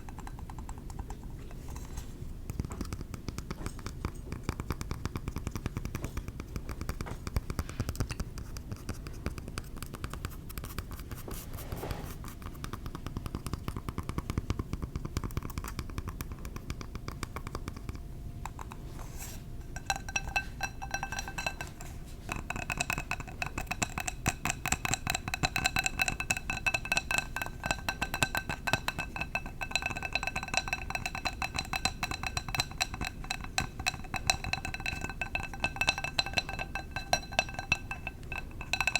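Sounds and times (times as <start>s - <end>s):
tapping on glass jar: 17.6s - 38.9s.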